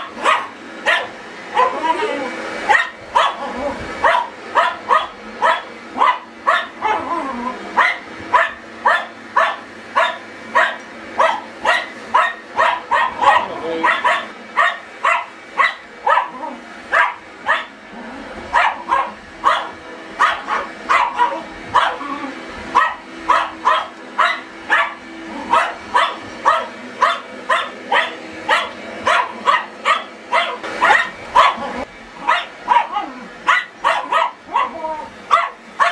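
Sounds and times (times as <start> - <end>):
dog barking: 0.0 - 2.0, 2.7 - 7.1, 7.8 - 17.8, 18.5 - 22.1, 22.7 - 35.9.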